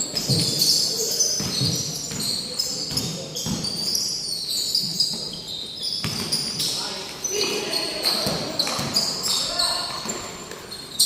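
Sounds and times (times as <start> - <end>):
basketball bouncing on gym floor: 0.1 - 4.0, 6.0 - 6.7, 8.0 - 9.2
high-pitched shoe squeaks: 0.2 - 11.0.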